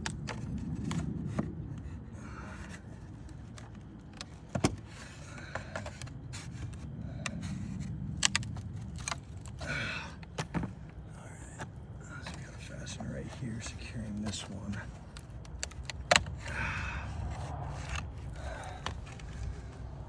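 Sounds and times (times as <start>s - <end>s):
steady low rumble: 0.0s - 20.0s
tools scraping wood: 11.5s - 19.7s
hand tools clicking and tapping: 11.6s - 19.3s.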